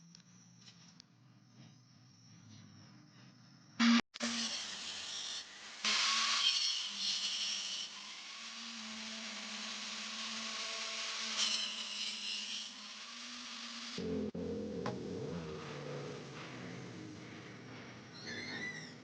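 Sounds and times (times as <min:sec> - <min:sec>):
grinder grinding steel: 0:04.2 - 0:17.3
low-pitched machine sound: 0:13.9 - 0:18.3.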